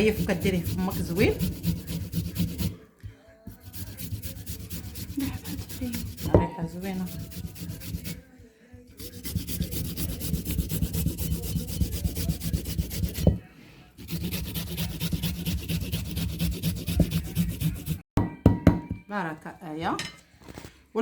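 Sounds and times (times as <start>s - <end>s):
ginger grated on hand grater: 0.0s - 2.8s, 3.5s - 8.3s, 8.9s - 13.3s, 14.0s - 18.0s.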